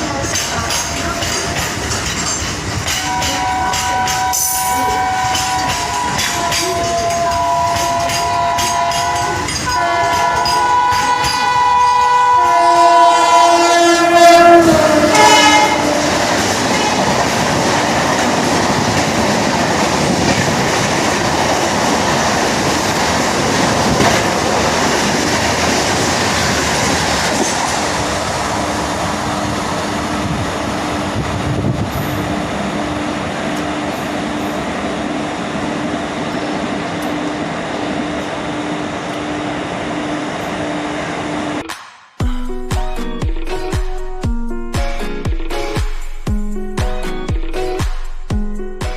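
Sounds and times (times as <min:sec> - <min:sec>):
train wheels clattering over rail joints: 0:00.0 - 0:12.2, 0:15.6 - 0:28.2
locomotive horn blasts: 0:03.0 - 0:17.0.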